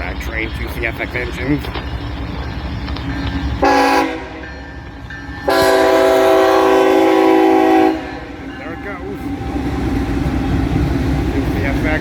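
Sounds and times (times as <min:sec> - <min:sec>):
low train rumble: 0:00.0 - 0:12.0
locomotive air horn blasts: 0:03.6 - 0:04.4, 0:05.4 - 0:08.8.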